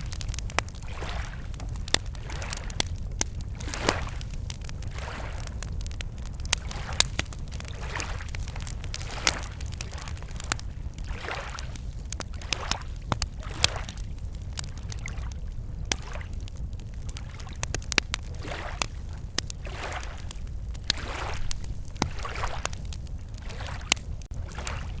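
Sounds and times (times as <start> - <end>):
lake waves lapping: 0.0 - 2.9, 3.5 - 5.6, 6.6 - 14.0, 18.3 - 25.0
campfire crackling and popping: 0.0 - 25.0.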